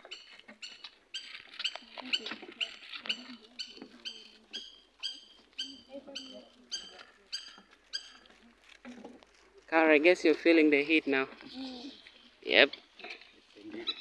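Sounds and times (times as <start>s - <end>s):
bird calling high note: 3.6s - 8.2s.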